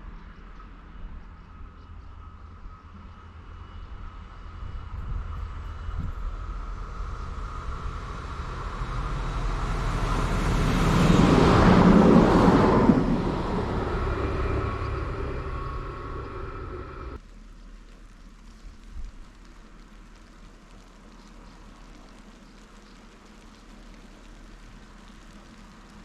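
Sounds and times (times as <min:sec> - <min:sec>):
train passing by: 0:00.0 - 0:17.2.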